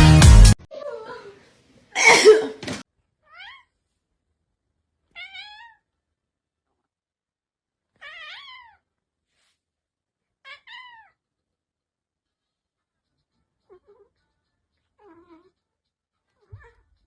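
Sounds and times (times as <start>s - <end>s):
cat meowing: 3.2s - 3.8s, 5.1s - 5.9s, 7.9s - 8.9s, 10.4s - 11.2s, 13.1s - 17.0s.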